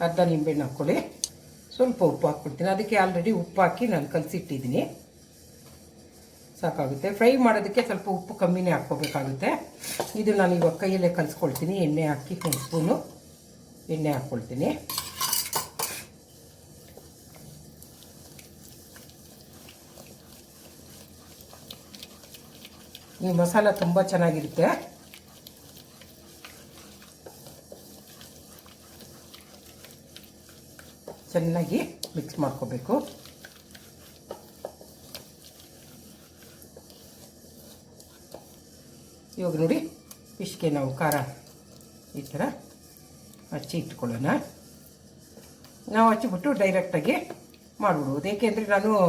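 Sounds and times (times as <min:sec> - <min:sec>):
spoon clinking against bowl: 0:14.9 - 0:16.0
wet squishing of paste mixed by hand: 0:16.3 - 0:48.5.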